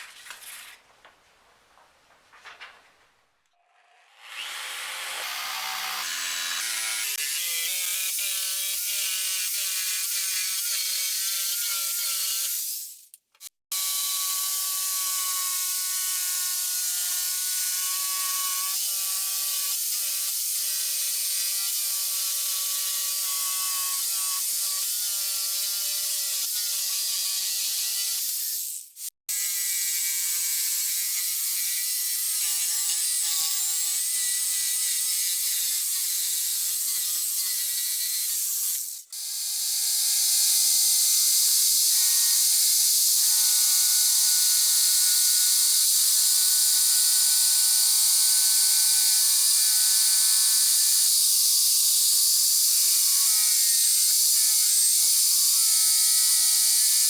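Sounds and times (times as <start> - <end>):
power tool motor whining: 4.0 - 8.2.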